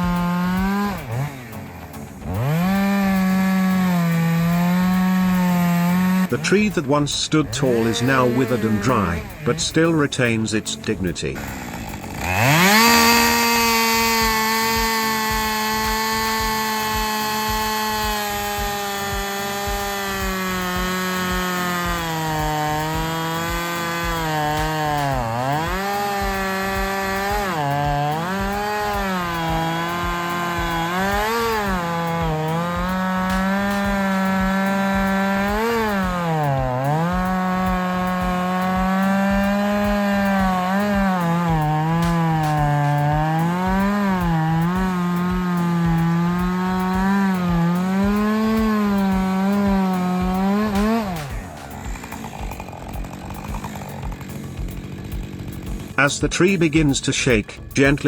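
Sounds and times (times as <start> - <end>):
chainsaw cutting tree trunk: 0.0 - 58.0.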